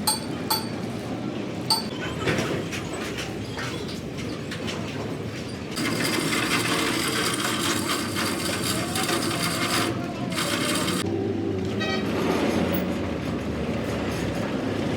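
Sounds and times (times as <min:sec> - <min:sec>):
loud steady noise: 0:05.8 - 0:11.1
rapid metallic clicking of tools: 0:05.8 - 0:11.1.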